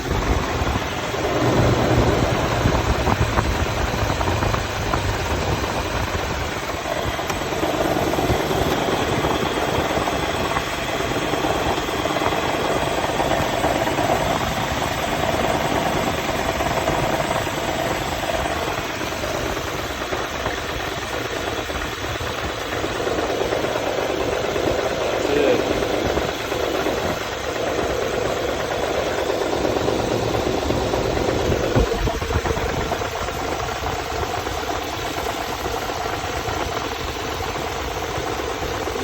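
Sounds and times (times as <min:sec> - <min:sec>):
mid-pitched drone: 0:00.0 - 0:20.8
engine rumble: 0:00.0 - 0:39.0.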